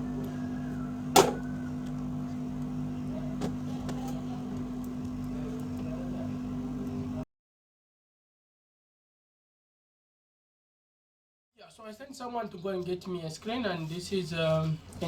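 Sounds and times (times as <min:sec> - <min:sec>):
heat gun humming: 0:00.0 - 0:05.9.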